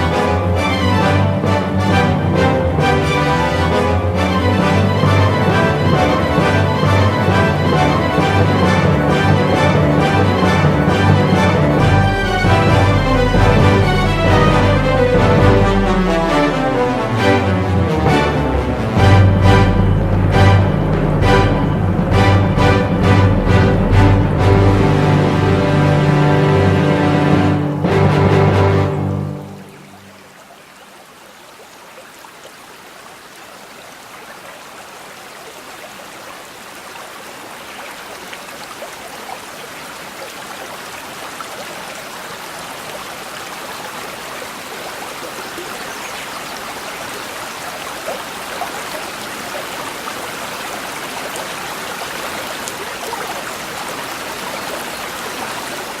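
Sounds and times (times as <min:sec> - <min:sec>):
water trickling over stones: 0:29.4 - 0:56.0.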